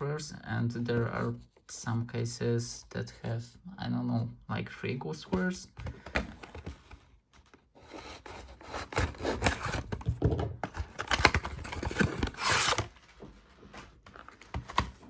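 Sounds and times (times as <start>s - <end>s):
packaging rustling and tearing: 6.3s - 15.0s.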